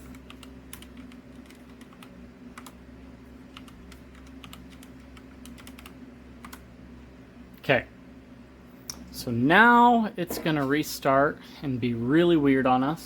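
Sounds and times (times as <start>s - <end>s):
keyboard typing: 0.0s - 2.8s, 3.5s - 6.6s.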